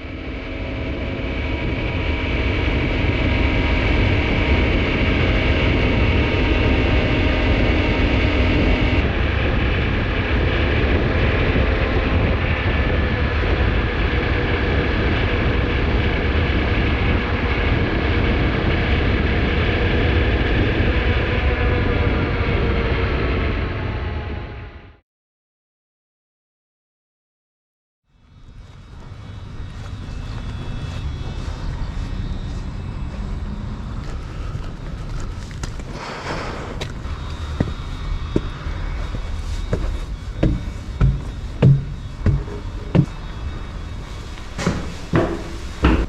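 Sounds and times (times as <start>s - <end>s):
wind rush: 0.0s - 24.6s, 28.4s - 46.0s
motorcycle engine running: 39.4s - 43.2s.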